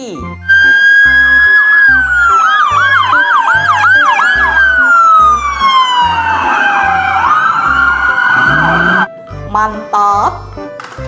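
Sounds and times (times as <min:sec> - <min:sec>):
police siren wailing and yelping: 0:00.4 - 0:09.1
low music beat: 0:00.5 - 0:09.1.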